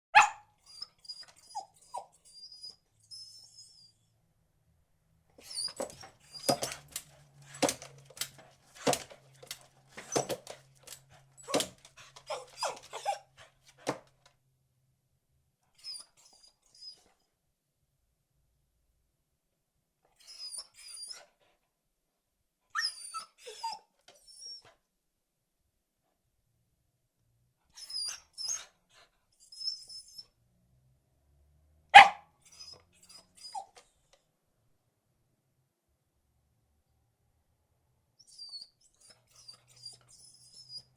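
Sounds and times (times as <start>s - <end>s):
dog barking: 0.1s - 0.5s, 31.9s - 32.3s
dog whimpering: 0.2s - 4.0s, 5.4s - 7.0s, 10.0s - 10.6s, 11.4s - 13.3s, 22.8s - 24.7s, 32.0s - 33.8s, 38.2s - 40.9s
dog whining: 0.2s - 4.1s, 5.4s - 13.4s, 20.2s - 21.3s, 22.8s - 24.8s, 27.8s - 30.3s, 32.0s - 33.9s, 38.2s - 40.9s.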